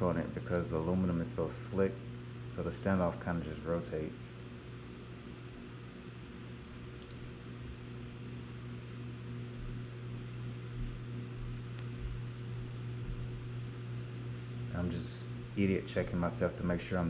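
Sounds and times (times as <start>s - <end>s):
low electrical hum: 0.0s - 17.0s
room tone hiss: 0.0s - 17.0s
faint small clicks: 7.0s - 7.3s.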